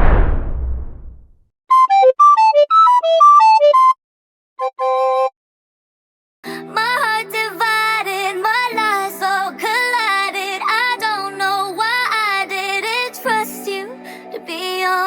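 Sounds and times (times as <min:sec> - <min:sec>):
woman singing wordless melody: 0:06.4 - 0:15.0.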